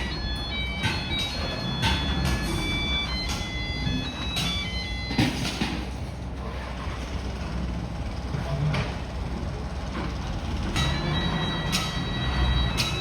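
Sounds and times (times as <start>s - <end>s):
sharp metallic knocks: 0.0s - 3.6s, 10.7s - 13.0s
diesel engine running: 0.0s - 13.0s.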